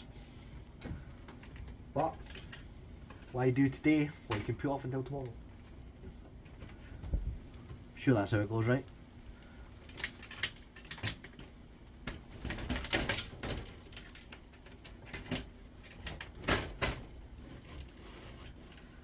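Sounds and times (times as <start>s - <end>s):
parts rattling: 9.7s - 19.0s.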